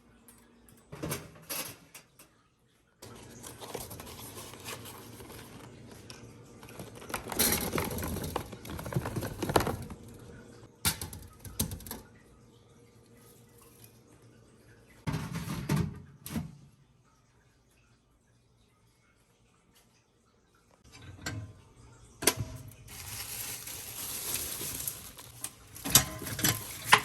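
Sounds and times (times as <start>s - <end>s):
containers clicking and knocking: 3.0s - 10.2s
rustling: 22.9s - 27.0s.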